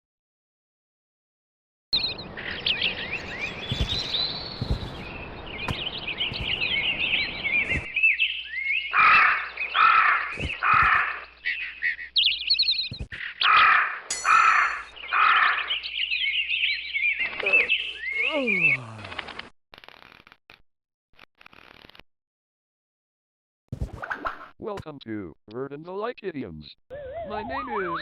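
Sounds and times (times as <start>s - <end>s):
small birds chirping: 2.0s - 19.4s
large bird calling loudly: 6.0s - 12.6s, 13.2s - 18.8s.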